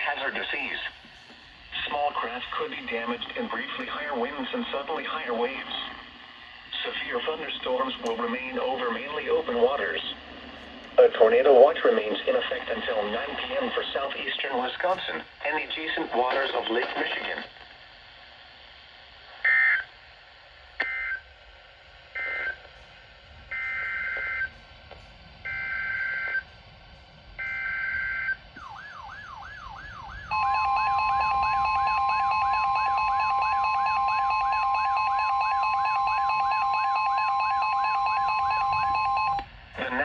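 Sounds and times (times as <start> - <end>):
screeching data tone bursts: 30.2 - 40.0
two-tone attention signal: 30.3 - 39.4.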